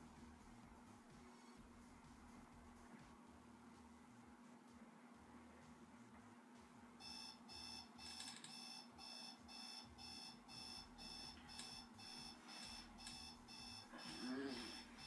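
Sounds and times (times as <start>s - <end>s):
alarm clock beeping: 7.0s - 15.0s.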